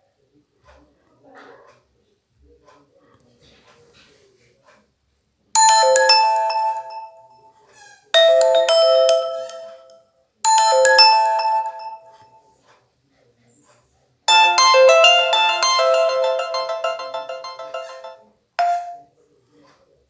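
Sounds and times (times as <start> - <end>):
bell-like ringtone chime: 5.6 - 7.5, 8.2 - 12.4, 14.3 - 19.1.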